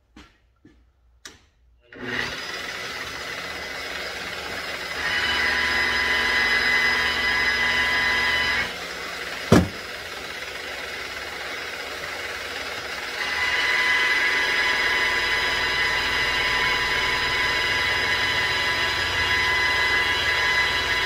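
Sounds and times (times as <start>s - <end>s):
buffing machine whine: 2.0s - 21.0s
sharp knock: 9.5s - 9.9s.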